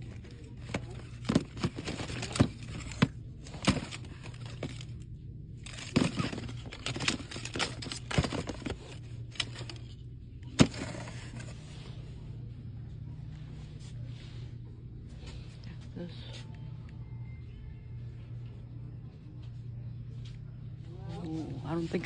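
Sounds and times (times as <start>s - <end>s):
packaging clicking and crinkling: 0.0s - 11.5s
steady low hum: 0.0s - 22.0s.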